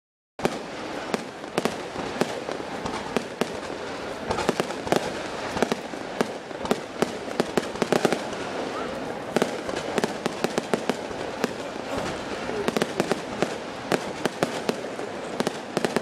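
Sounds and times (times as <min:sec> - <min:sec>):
fireworks exploding: 0:00.4 - 0:16.0
steady background noise: 0:00.4 - 0:16.0.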